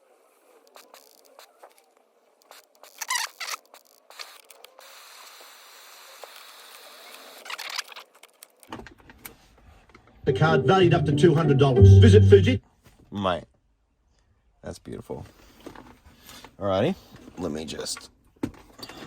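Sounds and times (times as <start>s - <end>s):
low hum: 10.3s - 12.6s.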